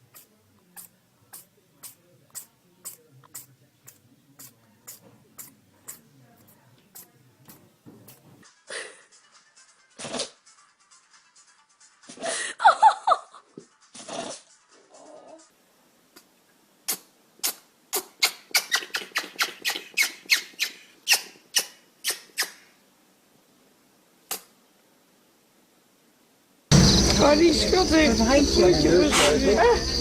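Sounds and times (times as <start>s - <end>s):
animal sneezing: 0.1s - 6.1s, 10.0s - 10.4s, 13.9s - 14.5s, 16.9s - 22.7s, 24.3s - 24.5s, 29.1s - 29.5s.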